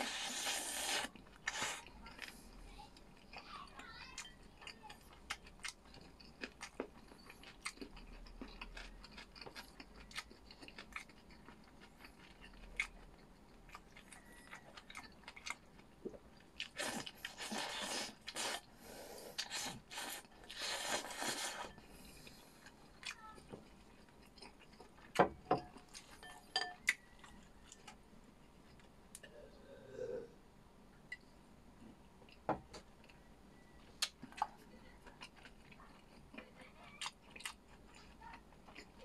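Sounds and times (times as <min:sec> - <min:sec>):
person chewing food: 0:00.0 - 0:30.2, 0:31.1 - 0:39.0.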